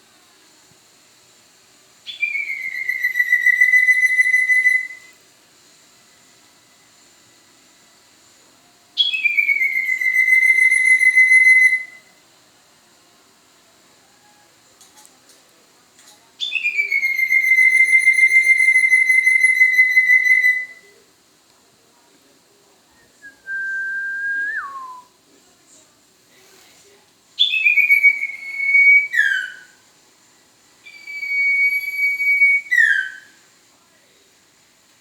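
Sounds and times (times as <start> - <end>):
whistled owl call notes: 2.1 - 5.2, 9.0 - 12.1, 16.4 - 20.9, 27.4 - 29.8, 30.8 - 33.4.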